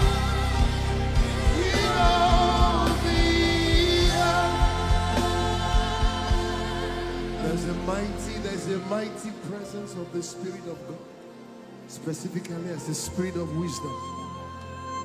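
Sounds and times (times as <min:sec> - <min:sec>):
low drum beat: 0:00.0 - 0:06.6
held chords: 0:00.0 - 0:11.9
person singing wordless notes: 0:00.0 - 0:14.8.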